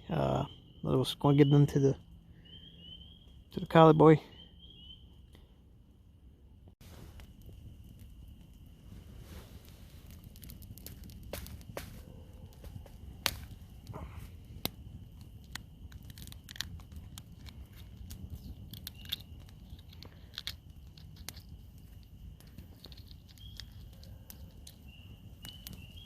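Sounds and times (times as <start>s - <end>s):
frogs chorus: 0.0s - 5.0s
campfire crackling and popping: 6.7s - 26.0s.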